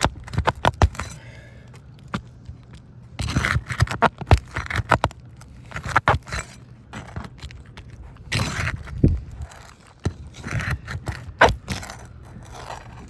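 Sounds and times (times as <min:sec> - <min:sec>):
roof shingles scraping and crackling: 0:03.1 - 0:13.0.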